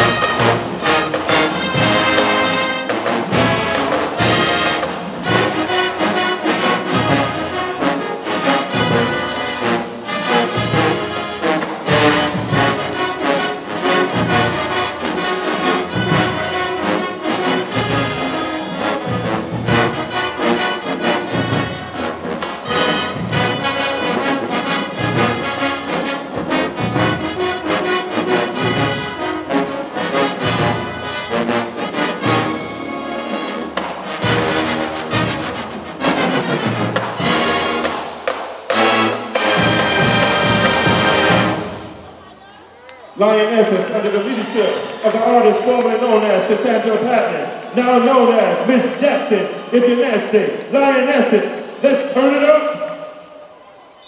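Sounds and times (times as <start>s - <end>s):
marching band playing: 0.0s - 42.4s
brass section: 0.0s - 43.4s.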